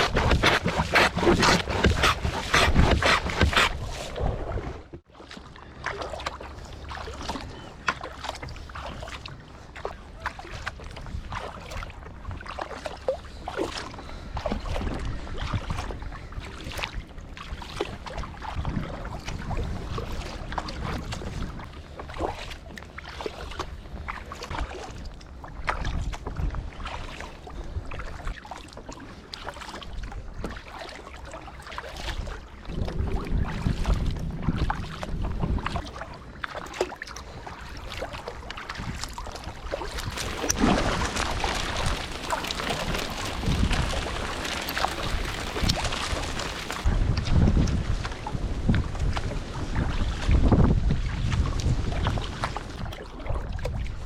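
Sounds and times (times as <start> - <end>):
water splashing around kayak: 0.0 - 54.0
low wind rumble: 32.2 - 36.5, 37.2 - 54.0.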